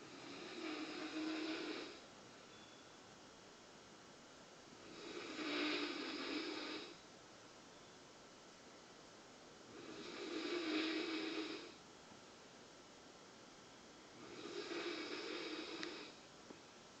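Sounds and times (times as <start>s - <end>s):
person snoring: 0.0s - 2.0s, 4.8s - 7.0s, 9.7s - 11.8s, 14.2s - 16.2s.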